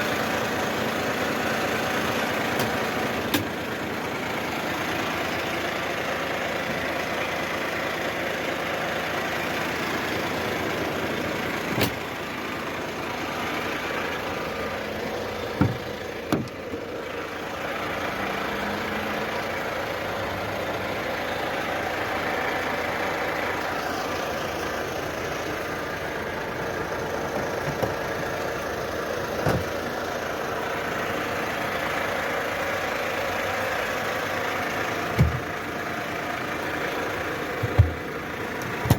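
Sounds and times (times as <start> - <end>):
work machine engine running: 0.0 - 38.9
short clunks: 15.5 - 16.8.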